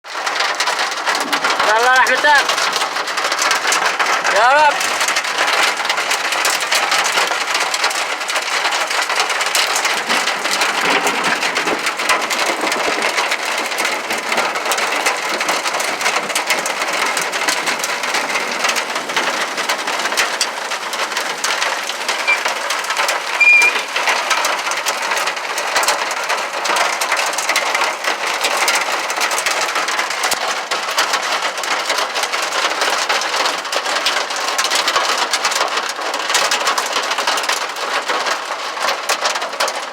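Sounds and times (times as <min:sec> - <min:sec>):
hail strikes ticking: 0:00.1 - 0:39.9.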